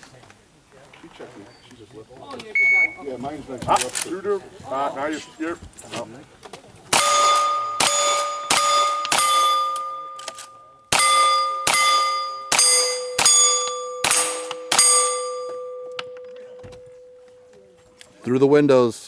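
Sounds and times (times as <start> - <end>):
gunshots: 6.9 - 10.0, 10.9 - 15.2
steel plate ringing: 6.9 - 17.7.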